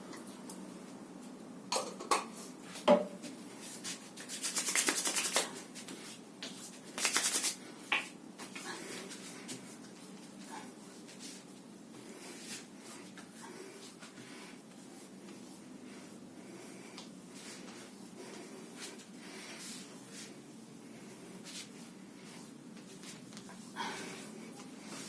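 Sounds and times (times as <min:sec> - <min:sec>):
rapid rubbing strokes: 0:03.6 - 0:05.4.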